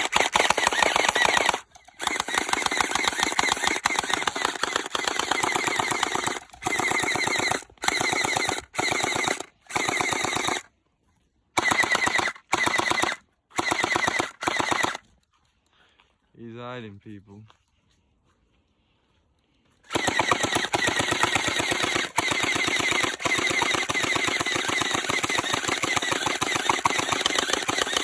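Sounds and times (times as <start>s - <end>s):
toy blaster rapid firing: 0.0s - 10.7s, 11.6s - 15.0s, 19.9s - 28.0s.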